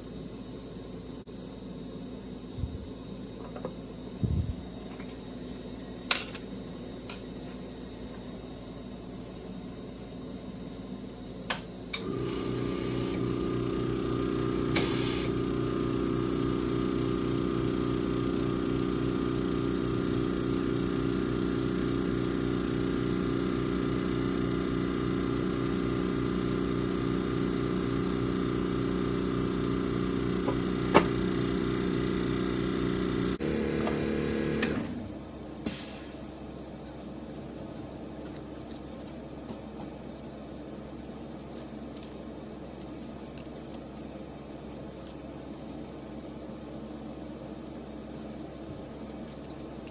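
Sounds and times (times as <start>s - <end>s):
small electric motor humming: 12.0s - 35.0s.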